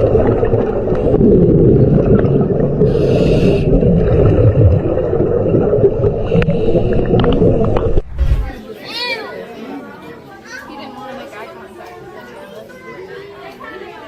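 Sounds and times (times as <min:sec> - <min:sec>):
underwater rumble and bubbling: 0:00.0 - 0:08.6.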